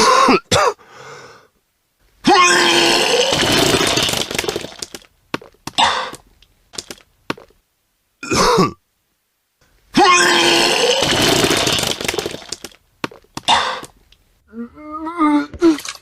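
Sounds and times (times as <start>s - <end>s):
person retching and vomiting: 2.2s - 5.0s, 5.7s - 6.3s, 8.2s - 8.8s, 10.0s - 14.0s
person spitting: 2.3s - 5.0s, 5.7s - 6.3s, 10.0s - 12.7s, 13.4s - 14.0s.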